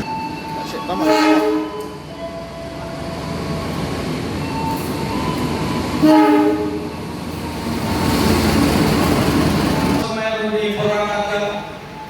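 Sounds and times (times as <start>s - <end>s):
train rumbling on track: 0.0s - 12.0s
train horn blast: 0.9s - 2.6s, 5.9s - 7.0s.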